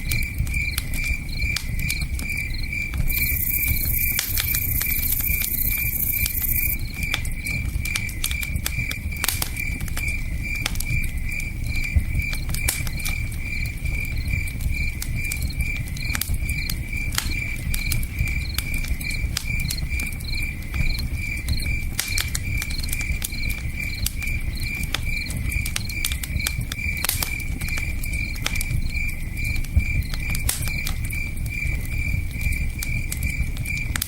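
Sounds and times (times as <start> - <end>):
campfire crackling and popping: 0.0 - 34.0
cricket chirping: 0.0 - 34.0.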